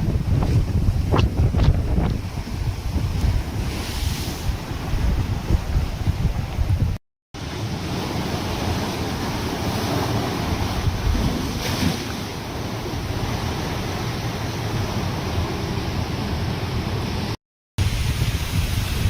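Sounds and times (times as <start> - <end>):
wind buffeting microphone: 0.0 - 7.0, 10.6 - 11.6, 17.8 - 19.0
heavy surf rushing: 0.0 - 19.0
storm wind: 0.0 - 19.0.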